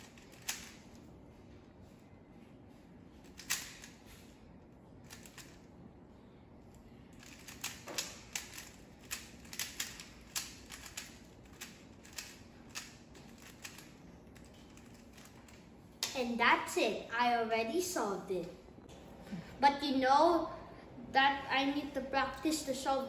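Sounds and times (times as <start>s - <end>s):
plastic puzzle cube clicking: 7.2s - 13.9s.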